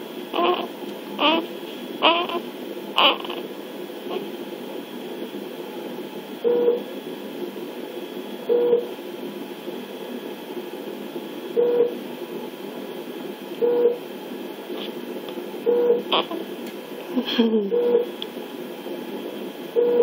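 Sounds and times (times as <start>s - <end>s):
baby hiccupping: 0.3s - 3.5s, 16.1s - 16.4s.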